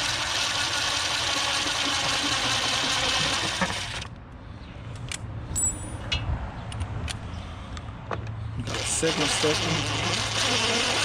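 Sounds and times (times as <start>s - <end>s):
power drill cutting plastic: 0.0s - 4.1s, 8.6s - 11.0s.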